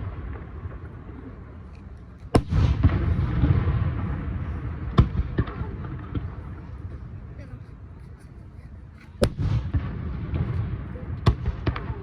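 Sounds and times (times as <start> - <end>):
small firework cracks: 0.0 - 7.2, 9.2 - 12.0
rumbling echo: 0.0 - 8.0, 9.1 - 12.0
fireworks bangs: 0.0 - 8.1, 9.1 - 12.0.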